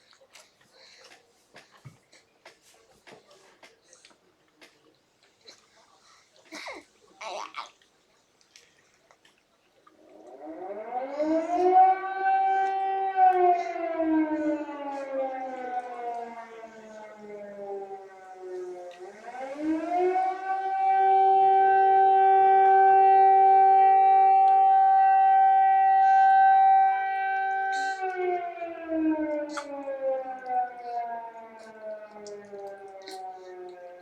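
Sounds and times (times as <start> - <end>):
air raid siren wailing: 10.0 - 34.0.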